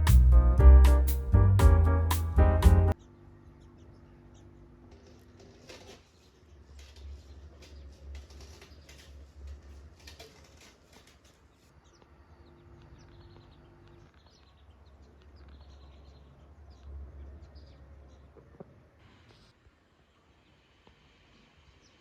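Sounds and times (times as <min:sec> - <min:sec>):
small birds chirping: 0:02.4 - 0:05.2, 0:10.9 - 0:18.6
faint clicks and rustles: 0:04.9 - 0:12.1.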